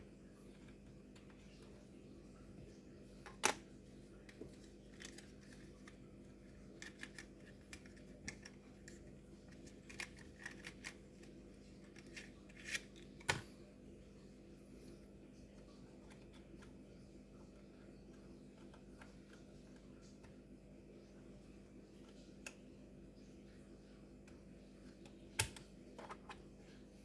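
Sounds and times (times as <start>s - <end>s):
hands handling laptop parts: 3.3s - 13.4s.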